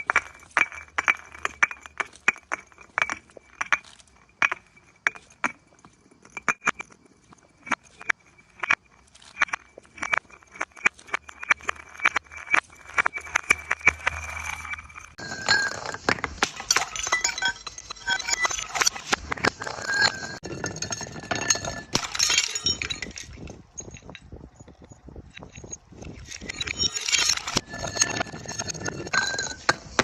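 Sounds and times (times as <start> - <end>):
glass bottles shattering: 10.9 - 24.2, 25.5 - 30.0
ringing glass tones: 11.4 - 30.0.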